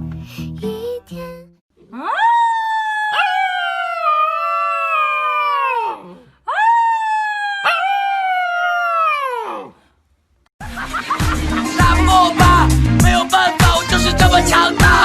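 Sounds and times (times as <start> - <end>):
dog howling: 1.9 - 9.7.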